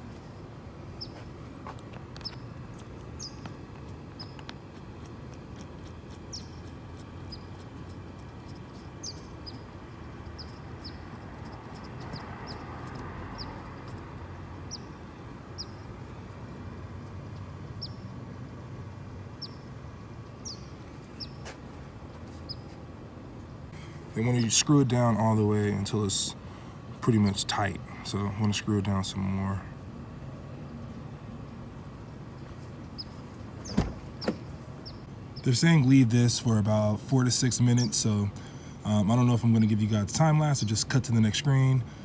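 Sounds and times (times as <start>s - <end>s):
small birds chirping: 0.9s - 16.4s, 17.1s - 18.2s, 19.4s - 21.5s, 22.3s - 22.8s, 30.6s - 36.0s.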